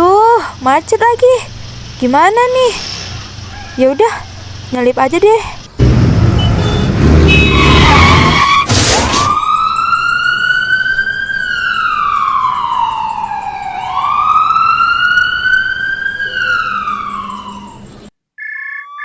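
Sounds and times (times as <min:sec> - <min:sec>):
road traffic engine noise: 0:00.0 - 0:18.1
emergency siren wailing: 0:06.2 - 0:18.1
loud crash: 0:06.9 - 0:09.4.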